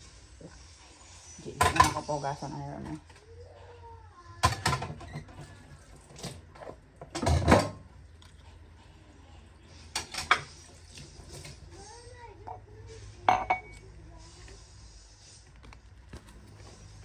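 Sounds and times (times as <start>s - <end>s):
objects rattling: 4.4s - 7.9s.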